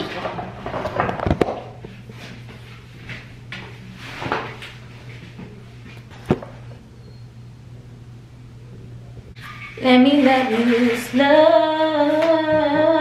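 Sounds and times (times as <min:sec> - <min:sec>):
low hum: 0:04.9 - 0:13.0.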